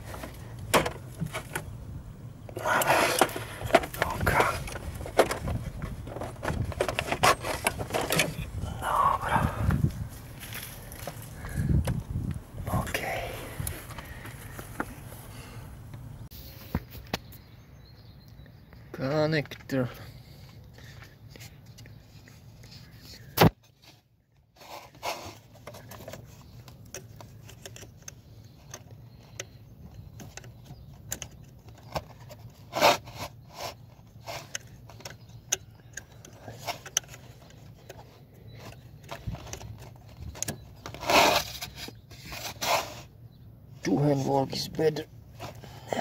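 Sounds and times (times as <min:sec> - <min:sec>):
steady low hum: 0:00.0 - 0:19.0
tools clicking and rattling on car parts: 0:02.5 - 0:08.6, 0:24.9 - 0:42.7.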